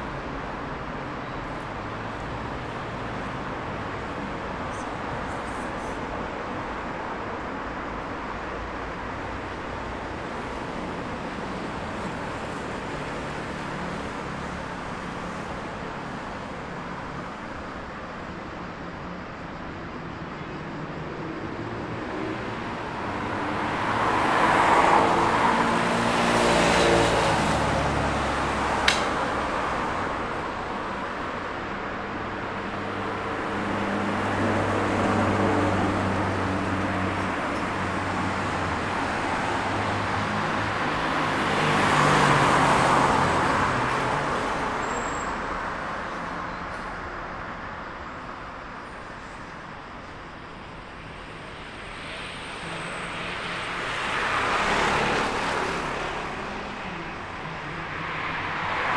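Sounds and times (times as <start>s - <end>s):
cars passing on street: 0.0s - 58.9s
vehicles passing loudly: 0.0s - 58.9s
sharp click: 28.8s - 29.5s.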